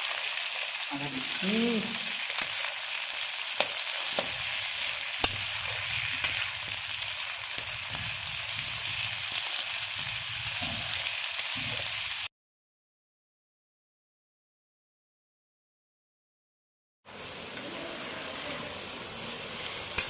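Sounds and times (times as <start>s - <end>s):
food sizzling in oil: 0.0s - 12.3s, 17.1s - 20.0s.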